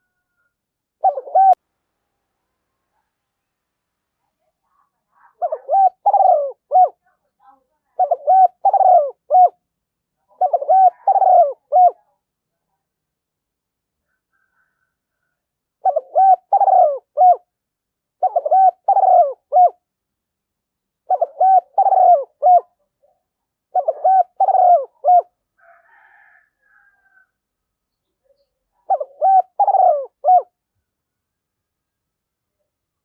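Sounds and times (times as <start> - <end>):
dove cooing: 1.0 - 1.6, 5.3 - 7.0, 8.0 - 9.6, 10.4 - 12.0, 15.8 - 17.5, 18.2 - 19.8, 21.0 - 22.8, 23.7 - 26.3, 28.8 - 30.6.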